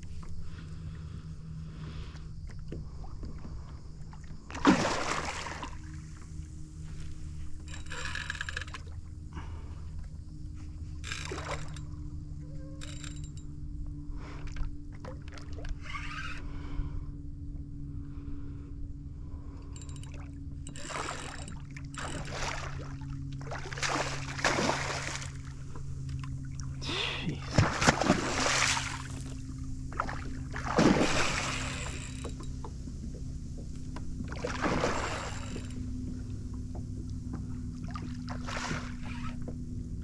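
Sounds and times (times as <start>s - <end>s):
steady low hum: 0.0s - 40.0s
water splashing: 4.5s - 6.2s, 22.0s - 25.6s, 26.2s - 32.4s, 34.2s - 35.7s, 37.8s - 39.1s.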